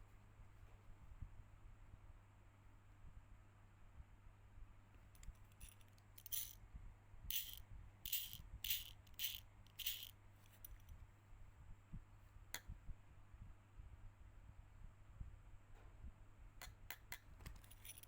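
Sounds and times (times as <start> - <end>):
small parts and tools rattling: 5.2 - 6.6, 7.3 - 10.9, 17.4 - 18.0.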